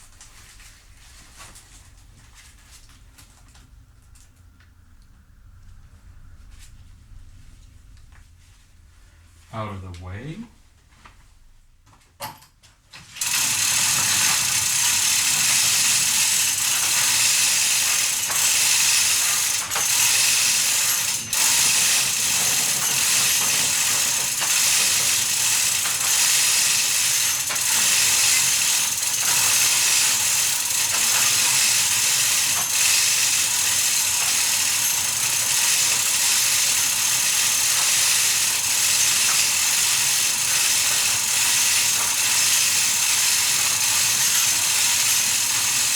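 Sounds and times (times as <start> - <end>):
ratchet winch clicking: 13.2 - 45.9.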